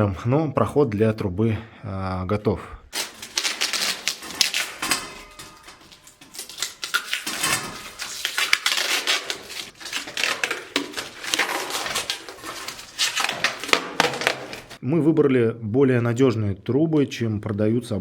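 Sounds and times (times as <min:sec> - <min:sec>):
metal objects clattering: 0:03.0 - 0:14.8.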